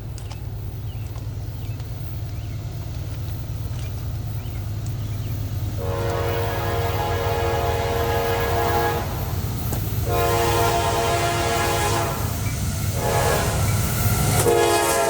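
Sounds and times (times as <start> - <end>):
birds chirping: 0.0 - 7.1
diesel locomotive rumbling: 0.0 - 15.0
locomotive air horn: 5.8 - 9.4, 10.0 - 15.0.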